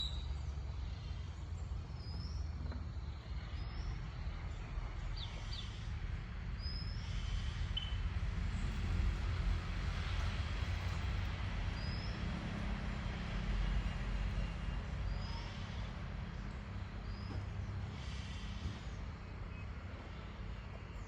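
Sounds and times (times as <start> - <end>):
bird chirps: 0.0 - 0.4
steady low rumble: 0.2 - 21.0.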